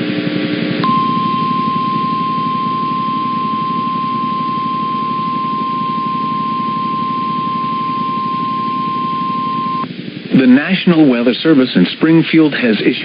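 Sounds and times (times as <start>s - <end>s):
buzzy radio hiss: 0.0s - 13.0s
steady high alarm tone: 0.8s - 9.8s.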